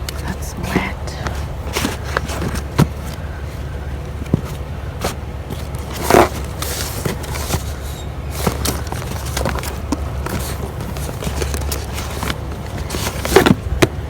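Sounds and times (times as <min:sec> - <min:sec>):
items knocking and rustling: 0:00.0 - 0:14.0
steady low rumble: 0:00.0 - 0:14.0.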